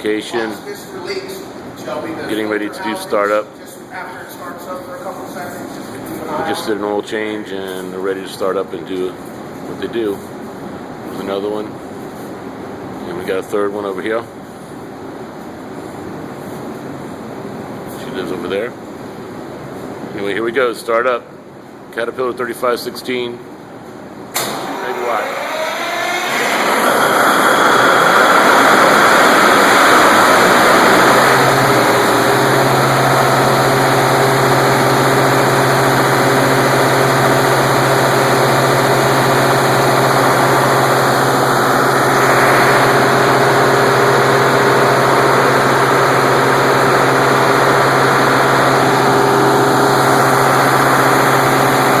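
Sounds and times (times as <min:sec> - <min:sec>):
diesel generator engine running: 0:24.4 - 0:52.0.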